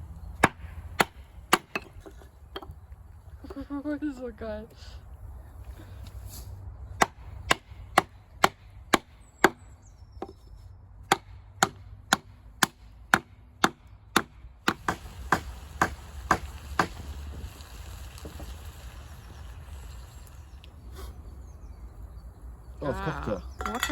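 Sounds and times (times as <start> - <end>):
blade chopping wood: 11.1 - 17.0.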